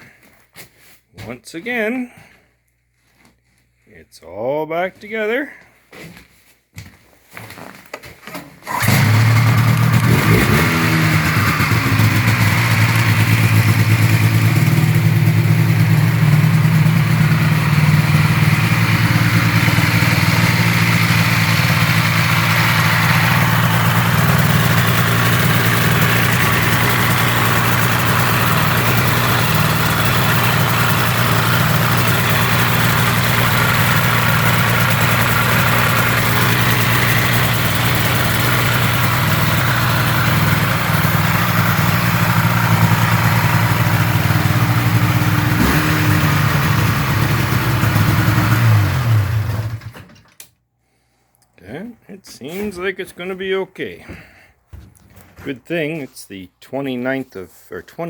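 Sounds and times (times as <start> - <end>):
snowmobile engine starting and idling: 8.6 - 50.5.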